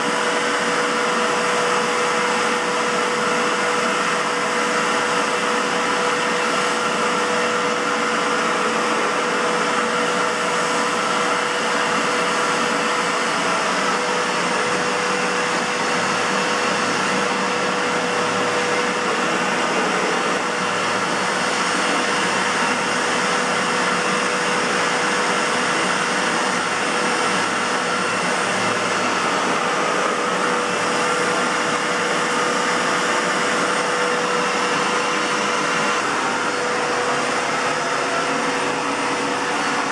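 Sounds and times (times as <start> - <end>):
canister vacuum cleaner running: 0.0 - 39.9.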